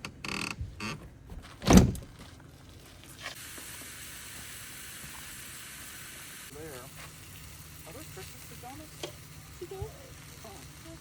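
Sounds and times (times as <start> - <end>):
loud thump: 1.3 - 2.1
hot dogs sizzling in a pan: 3.3 - 11.0.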